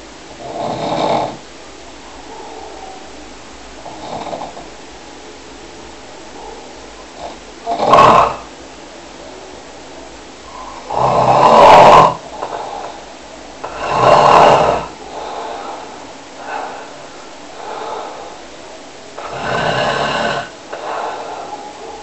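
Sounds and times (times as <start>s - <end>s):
person snoring: 0.4s - 1.4s, 7.2s - 8.5s, 10.9s - 13.0s, 13.6s - 17.0s, 17.6s - 18.4s, 19.2s - 21.7s
faint breathing: 10.5s - 22.0s.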